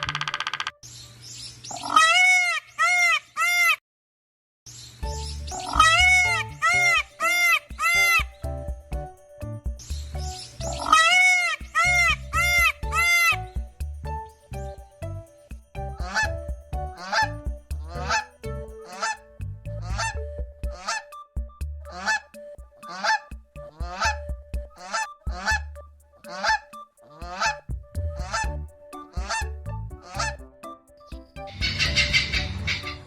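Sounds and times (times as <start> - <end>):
large bird calling: 9.9 - 13.6, 17.0 - 25.6, 31.5 - 33.0.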